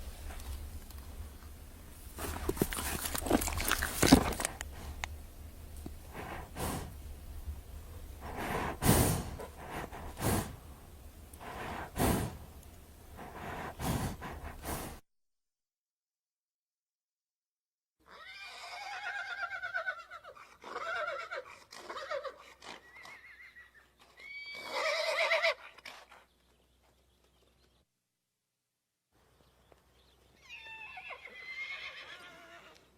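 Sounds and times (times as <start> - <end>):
low hum: 0.0 - 14.9
horse blowing through nostrils: 2.1 - 5.1, 6.0 - 7.0, 8.2 - 10.7, 11.4 - 12.5, 13.1 - 15.0.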